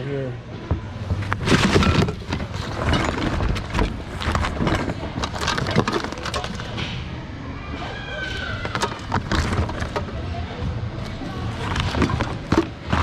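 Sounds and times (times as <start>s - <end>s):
store background noise: 0.0s - 13.0s
objects rummaged through by hand: 1.0s - 7.0s, 8.2s - 10.3s, 11.0s - 13.0s.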